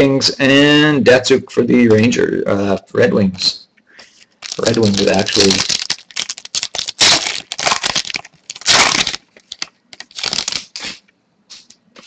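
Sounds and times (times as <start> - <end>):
wrapper tearing and crinkling: 4.4 - 11.0.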